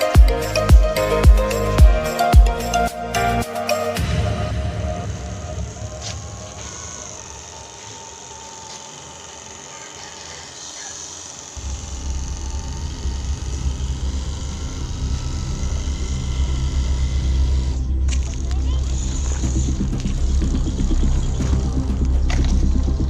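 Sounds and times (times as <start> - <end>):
rc truck rumble: 5.0 - 23.0.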